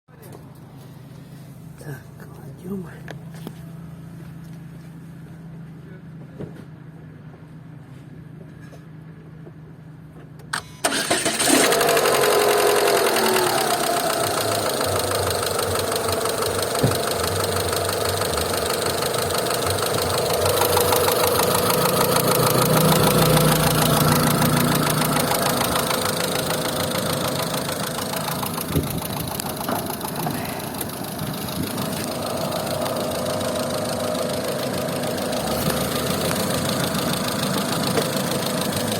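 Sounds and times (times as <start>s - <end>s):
car engine starting and idling: 10.3s - 38.9s
fast ticking engine knock: 11.4s - 38.9s.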